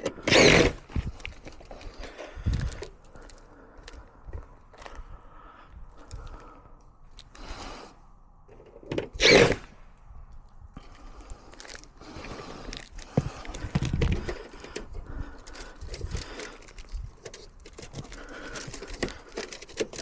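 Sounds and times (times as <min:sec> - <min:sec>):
scrapes rustles and clicks: 0:00.0 - 0:05.0, 0:11.3 - 0:20.0.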